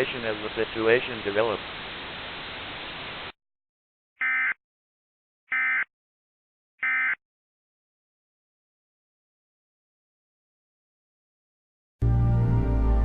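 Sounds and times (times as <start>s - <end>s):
steady hiss: 0.0s - 3.4s.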